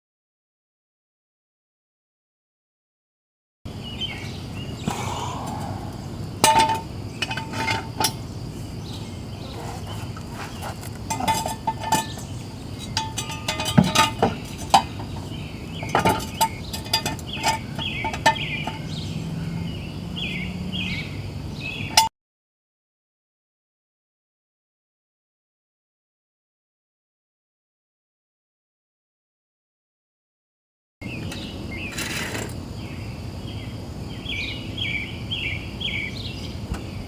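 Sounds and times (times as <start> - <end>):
metal clinks from car jack: 6.4 - 8.2, 11.0 - 15.2, 15.8 - 19.0.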